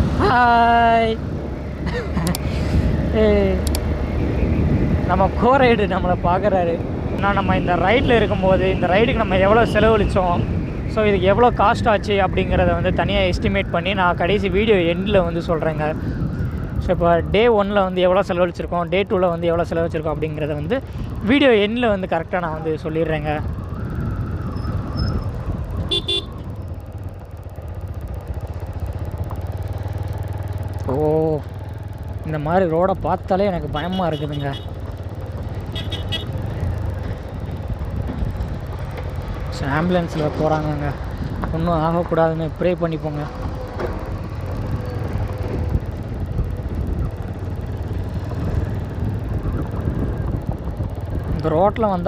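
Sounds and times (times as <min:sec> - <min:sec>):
wind buffeting microphone: 0:00.0 - 0:33.8, 0:34.6 - 0:52.0
motorcycle engine running: 0:14.3 - 0:52.0
vehicle horn beeps: 0:25.9 - 0:26.4, 0:35.7 - 0:36.4.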